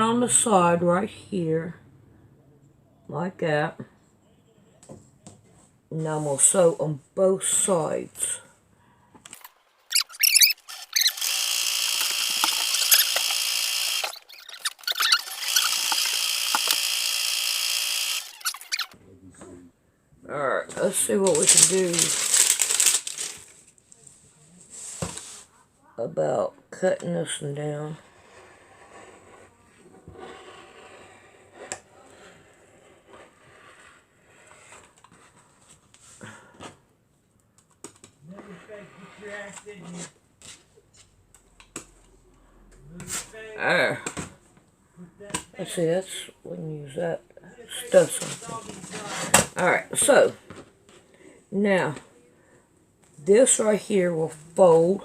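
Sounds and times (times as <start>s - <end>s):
squeaky handling sounds: 9.4s - 11.3s, 12.4s - 13.3s, 14.0s - 16.1s, 18.3s - 19.0s
sewing machine stitching: 10.1s - 18.9s
cloth rustling: 21.2s - 23.9s.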